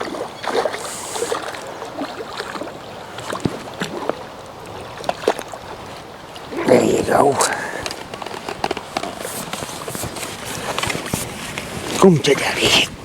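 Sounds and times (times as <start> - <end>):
water splashing and dripping: 0.0 - 8.4
brief hiss: 0.7 - 1.6.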